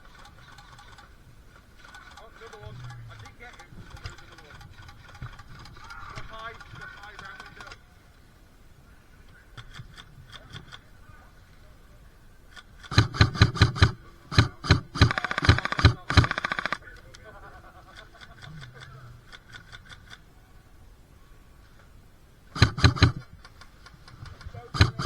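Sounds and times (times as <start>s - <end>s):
fainter distant shots: 12.7s - 17.4s, 22.6s - 23.3s, 24.3s - 25.0s
airsoft rifle shots: 12.8s - 17.0s, 22.6s - 23.3s, 24.6s - 25.0s.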